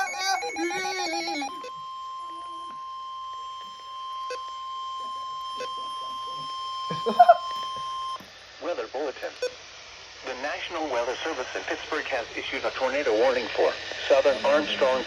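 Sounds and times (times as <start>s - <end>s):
voice: 0.0s - 1.6s, 8.6s - 9.4s, 10.2s - 15.0s
steady high alarm beep: 0.0s - 8.2s.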